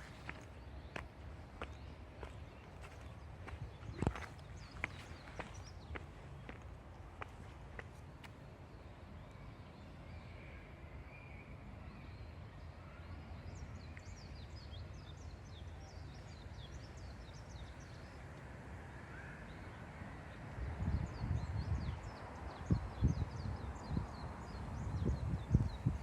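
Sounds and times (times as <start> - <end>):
small birds chirping: 0.0 - 7.4.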